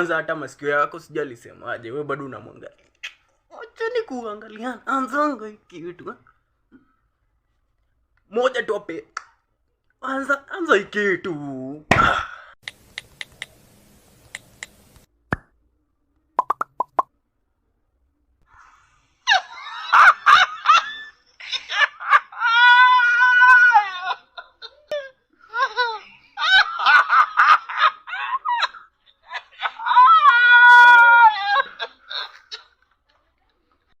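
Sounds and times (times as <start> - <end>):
high-pitched laughter and squealing: 19.2 - 32.9.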